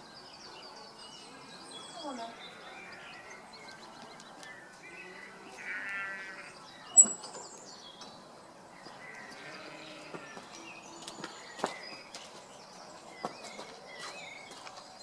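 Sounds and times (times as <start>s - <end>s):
faint background noise: 0.0s - 15.0s.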